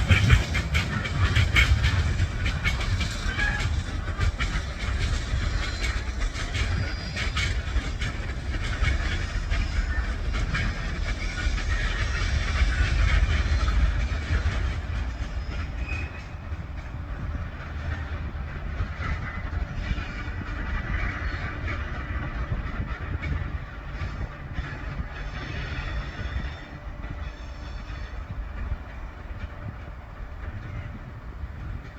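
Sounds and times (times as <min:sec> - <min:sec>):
train wheel clicks: 0:00.0 - 0:20.8
train rumbling past: 0:00.0 - 0:31.9.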